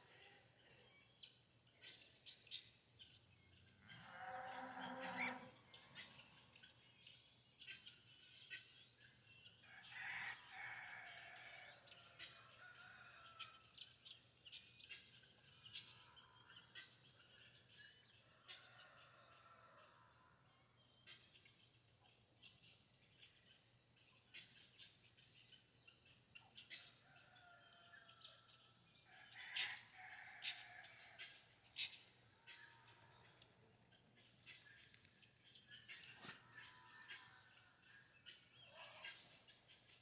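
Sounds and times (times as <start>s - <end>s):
small birds chirping: 0.0s - 10.3s, 11.8s - 40.0s
rooster crowing: 9.7s - 13.6s, 27.2s - 31.3s.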